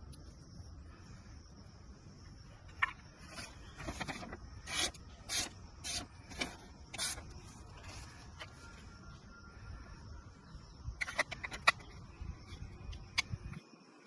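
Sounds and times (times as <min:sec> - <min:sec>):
rough rasping scraping strokes: 0:03.2 - 0:08.6.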